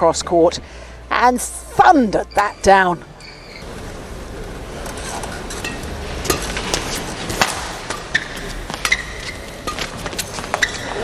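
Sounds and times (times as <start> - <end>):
shoes squeaking on court floor: 2.1 - 3.8, 4.9 - 11.0
rackets striking shuttlecock: 5.4 - 11.0.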